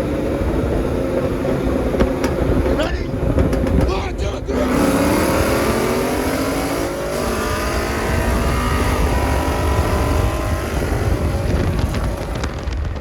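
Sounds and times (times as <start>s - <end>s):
car engine accelerating: 0.0s - 13.0s.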